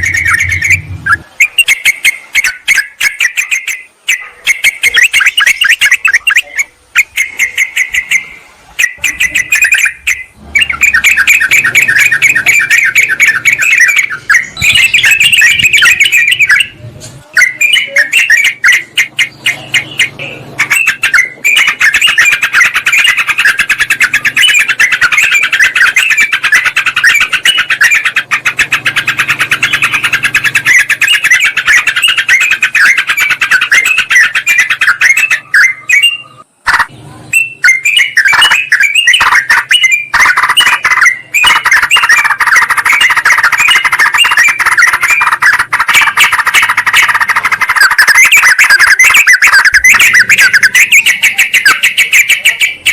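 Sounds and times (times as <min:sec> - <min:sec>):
bulbuls chirping and chattering: 0:00.0 - 0:52.9.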